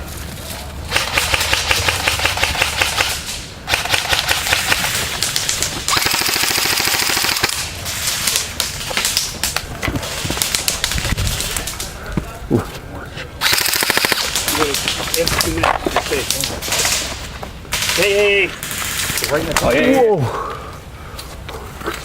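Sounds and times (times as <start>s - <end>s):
airsoft guns firing automatic bursts: 0.9s - 9.5s, 13.4s - 17.1s, 17.7s - 19.4s.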